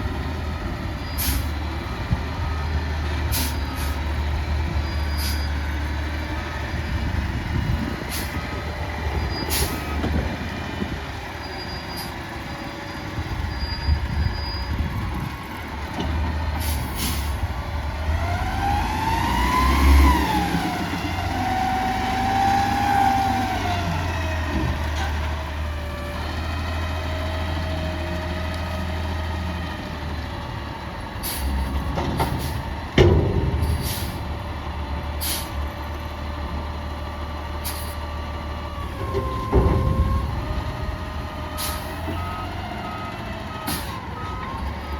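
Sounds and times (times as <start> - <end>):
air brake hisses: 1.1 - 1.6, 3.3 - 4.0, 5.1 - 5.5, 8.1 - 8.4, 9.4 - 9.8, 16.6 - 17.4, 31.2 - 31.7, 33.6 - 34.3, 35.2 - 35.6, 37.6 - 38.0, 41.6 - 42.0
garbage truck engine revving: 14.0 - 44.9.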